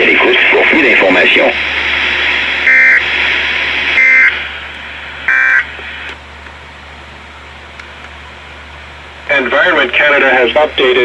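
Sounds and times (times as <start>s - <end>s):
radio hiss: 0.0s - 6.4s, 7.0s - 11.0s
buzzy digital data tones: 0.3s - 6.1s
low hum: 0.5s - 11.0s.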